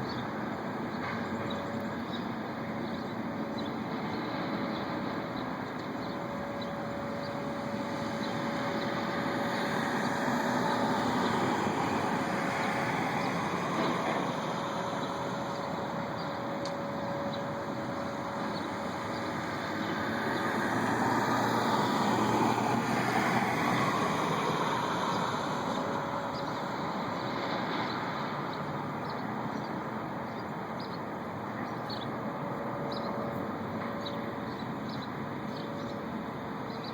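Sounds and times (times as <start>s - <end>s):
distant drone from sky: 0.0s - 36.9s.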